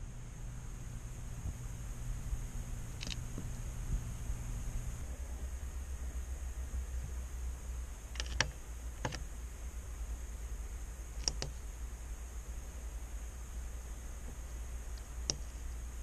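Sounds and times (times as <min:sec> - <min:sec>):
faint high whine: 0:00.0 - 0:16.0
steady low hum: 0:00.0 - 0:16.0
light sharp clicks: 0:11.2 - 0:11.6.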